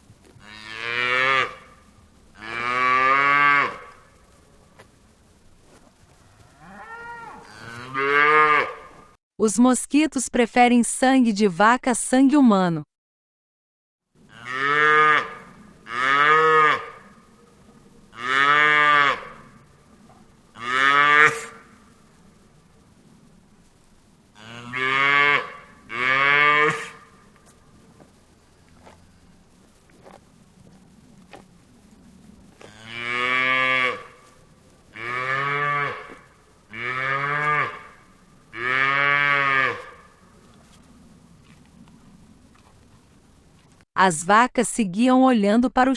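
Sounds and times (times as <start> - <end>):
cow mooing: 0.4 - 1.8, 2.4 - 4.1, 6.2 - 9.0, 14.3 - 17.2, 18.1 - 19.8, 20.6 - 21.8, 24.4 - 27.3, 32.6 - 34.3, 34.9 - 40.2.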